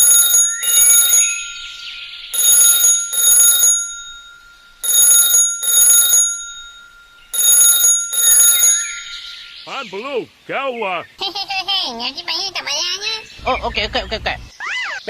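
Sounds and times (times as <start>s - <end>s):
electronic double ring: 0.0s - 9.6s
faint steady tone: 0.0s - 10.4s.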